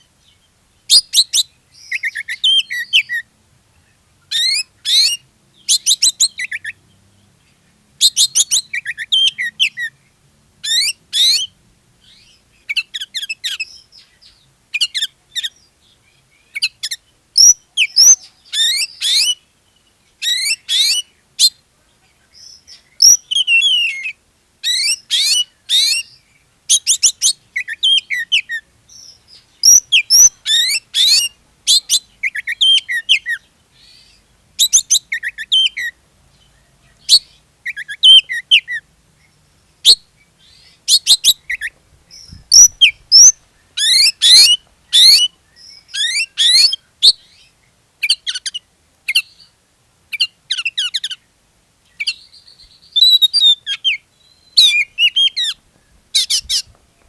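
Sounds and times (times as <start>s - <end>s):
bird singing high whistles: 8.0s - 9.9s, 17.4s - 19.4s, 23.0s - 36.0s, 39.8s - 49.4s, 52.0s - 55.6s.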